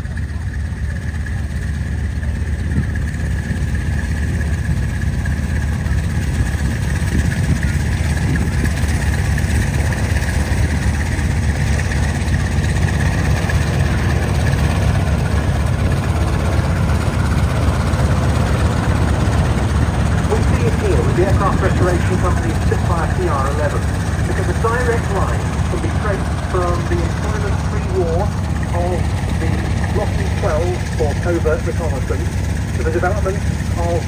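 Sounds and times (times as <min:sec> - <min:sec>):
piston aircraft engines droning: 0:00.0 - 0:34.0.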